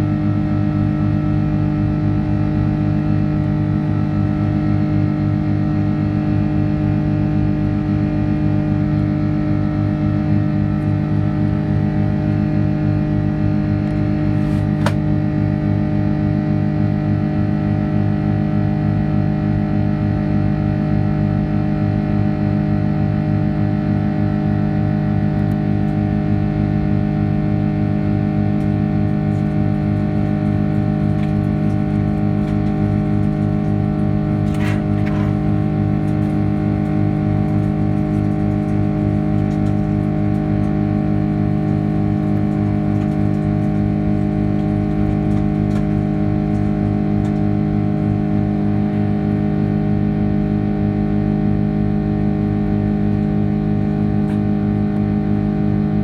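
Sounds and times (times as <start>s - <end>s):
airliner cabin engine drone: 0.0s - 15.1s, 25.2s - 56.0s.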